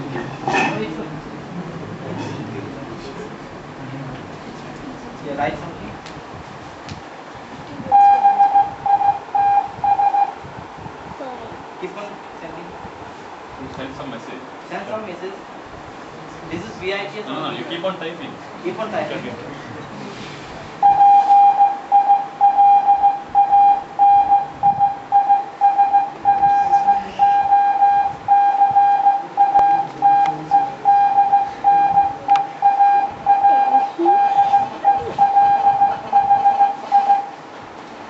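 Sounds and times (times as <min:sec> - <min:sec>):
morse code beeps: 0:07.9 - 0:10.4, 0:20.8 - 0:37.4.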